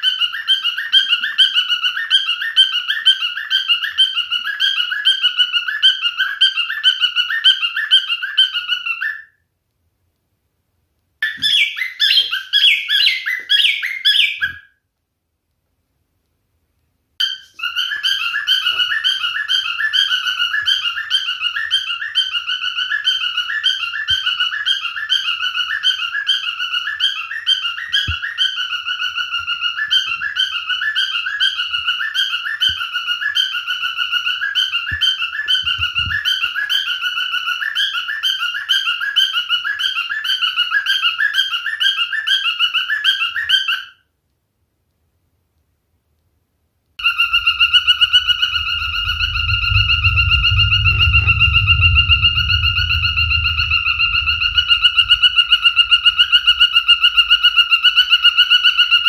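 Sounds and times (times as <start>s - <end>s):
cockatiel warbling whistle: 11.2s - 14.7s, 17.2s - 44.0s, 47.0s - 59.0s.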